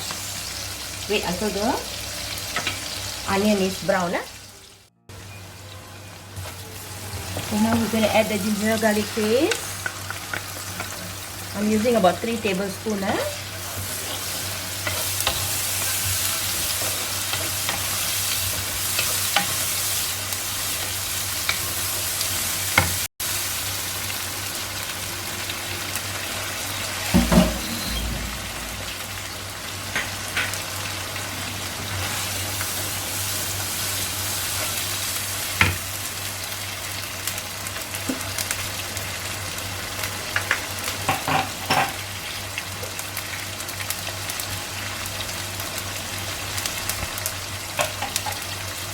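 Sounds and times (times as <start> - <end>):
onions sizzling in hot oil: 0.0 - 48.9.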